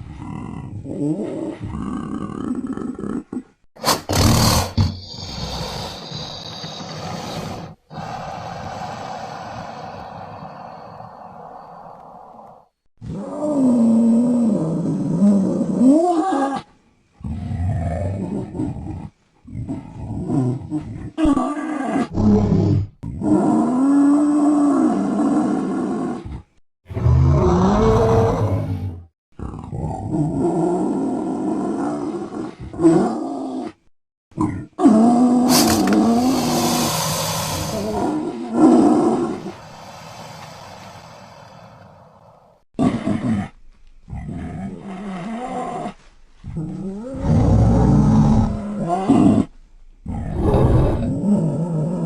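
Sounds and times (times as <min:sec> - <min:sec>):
creature roars and growls: 0:00.0 - 0:52.0
grunt-like creature call: 0:34.4 - 0:41.8.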